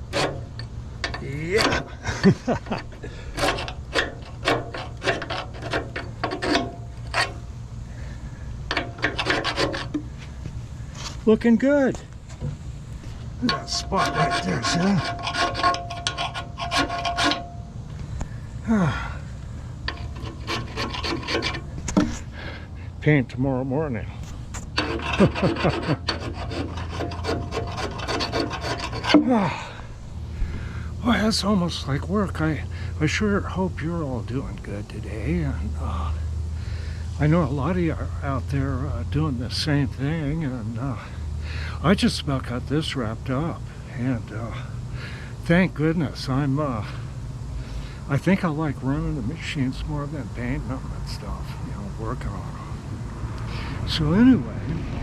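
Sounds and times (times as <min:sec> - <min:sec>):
scraping paint off metal: 0:00.0 - 0:08.1, 0:08.7 - 0:11.2, 0:12.3 - 0:17.6, 0:19.8 - 0:22.5, 0:24.2 - 0:29.8
low steady hum: 0:00.0 - 0:55.0.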